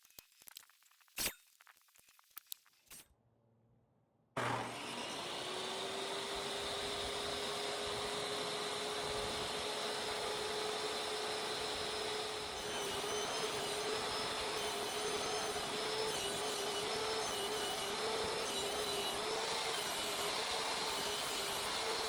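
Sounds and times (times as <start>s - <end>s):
power tool motor humming: 4.4s - 22.0s.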